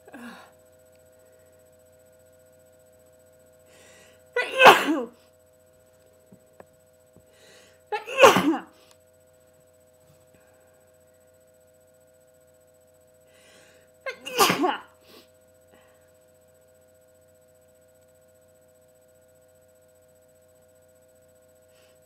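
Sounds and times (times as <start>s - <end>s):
person sneezing loudly: 4.4s - 5.1s, 8.0s - 8.7s, 14.1s - 14.9s.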